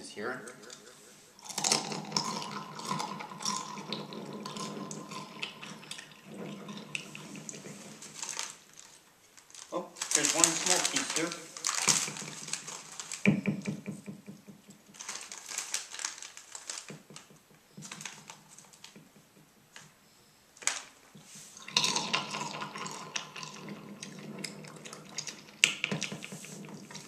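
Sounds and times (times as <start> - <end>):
chips being crunched: 1.4 - 3.8, 8.0 - 13.3.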